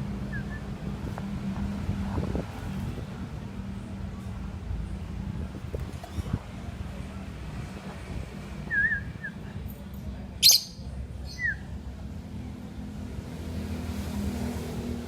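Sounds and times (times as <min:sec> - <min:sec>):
lovebird whistling and shrieking: 0:10.4 - 0:11.6.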